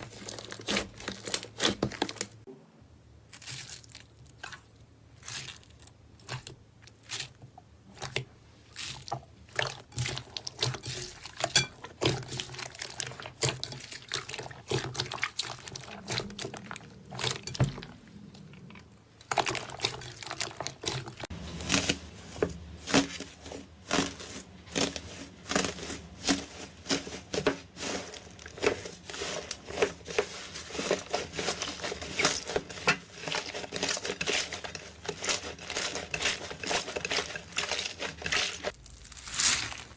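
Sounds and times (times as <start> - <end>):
slime popping and crackling: 22.8 - 39.9.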